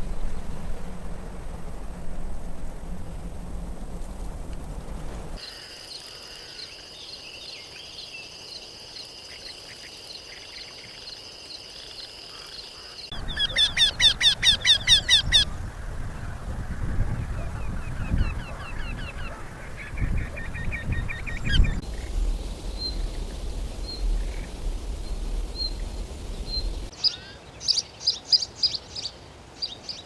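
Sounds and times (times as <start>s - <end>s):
wind-like rumble: 0.0s - 5.4s, 13.1s - 26.9s
bird singing downward notes: 13.1s - 15.6s, 17.3s - 28.8s.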